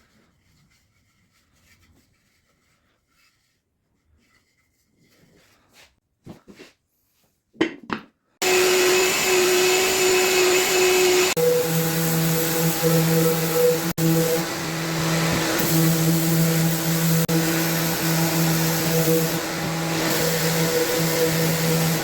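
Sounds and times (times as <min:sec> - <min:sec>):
handling scrapes: 0:00.0 - 0:07.4
electric motor whining: 0:08.4 - 0:22.0.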